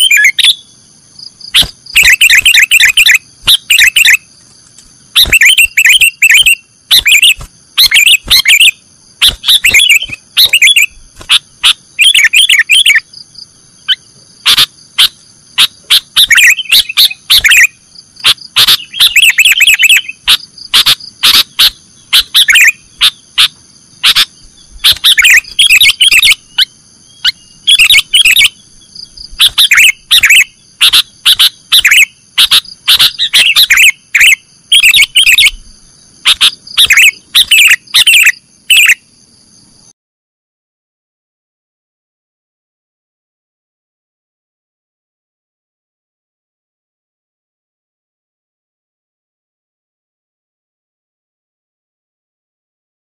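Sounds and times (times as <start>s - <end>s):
bird chattering chirps: 0.0s - 4.3s, 5.0s - 39.0s.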